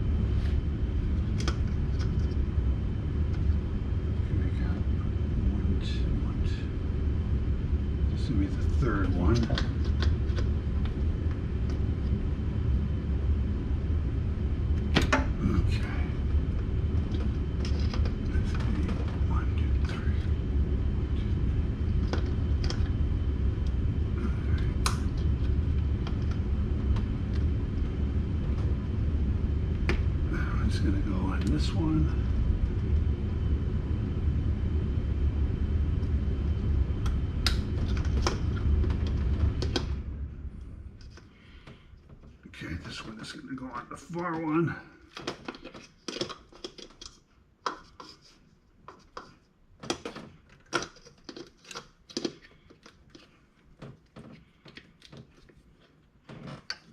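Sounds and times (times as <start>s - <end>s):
low rumble: 0.0s - 45.2s.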